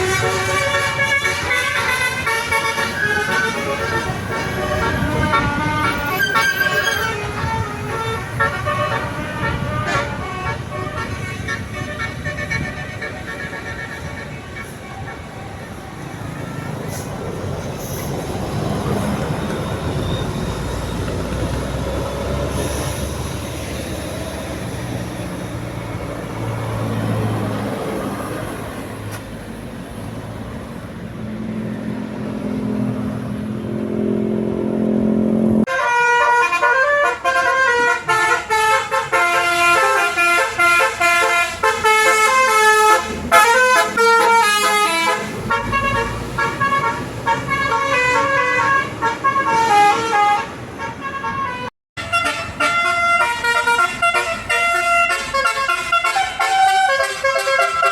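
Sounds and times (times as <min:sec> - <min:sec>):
musical bus horn melody: 0:00.0 - 0:15.8, 0:35.3 - 0:57.9
bus engine: 0:00.0 - 0:57.9
road noise: 0:00.0 - 0:57.9.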